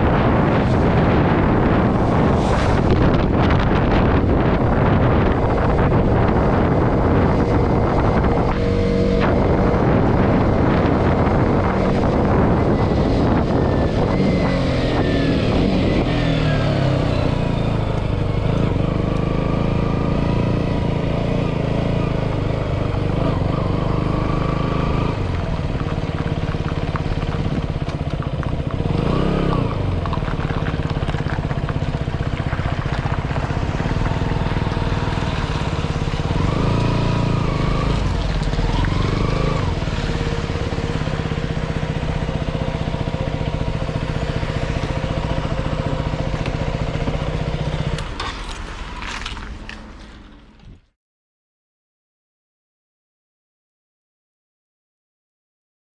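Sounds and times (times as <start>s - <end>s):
wind rushing over microphone: 0.0s - 26.1s
motorcycle engine running: 0.0s - 50.9s.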